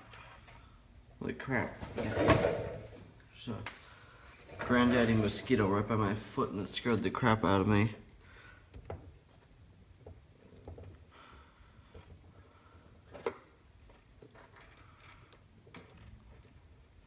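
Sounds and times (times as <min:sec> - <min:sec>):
wire twisting clicks and rustling: 0:08.0 - 0:12.4, 0:13.0 - 0:17.0.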